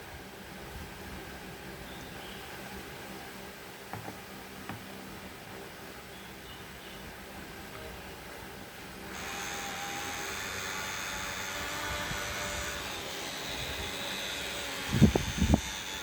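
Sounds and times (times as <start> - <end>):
dull thumps: 3.9 - 4.9
small electric motor whirring: 9.1 - 16.0.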